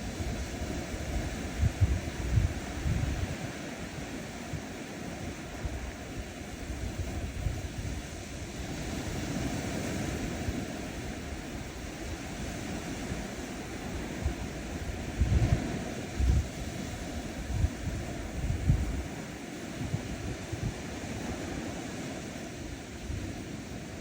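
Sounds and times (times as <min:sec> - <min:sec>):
waves washing onto shore: 0:00.0 - 0:24.0
wind rumbling on microphone: 0:00.0 - 0:24.0.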